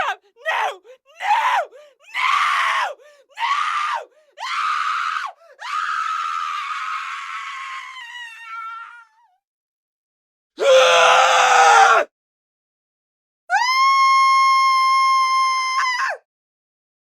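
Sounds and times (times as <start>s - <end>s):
person screaming: 0.0s - 9.1s, 10.6s - 12.1s.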